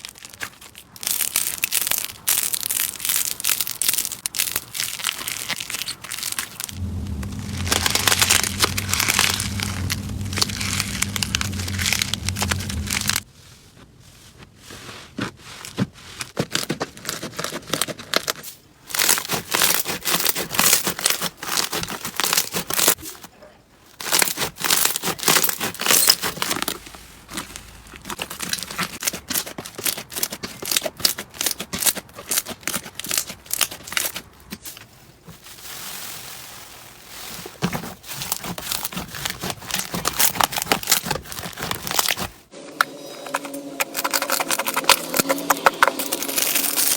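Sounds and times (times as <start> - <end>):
slime crackling and popping: 0.0 - 13.2
low steady hum: 6.7 - 13.2.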